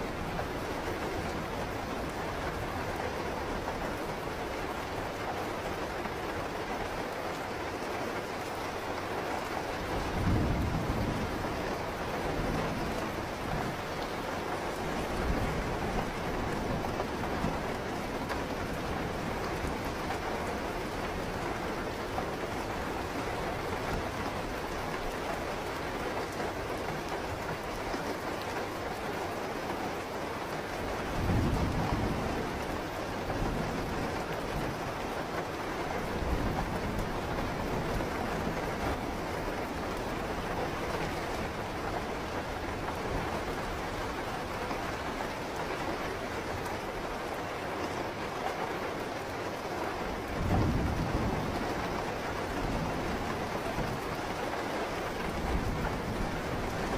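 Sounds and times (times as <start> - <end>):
heavy rain: 0.0 - 56.9
low thunder rumble: 10.0 - 13.9.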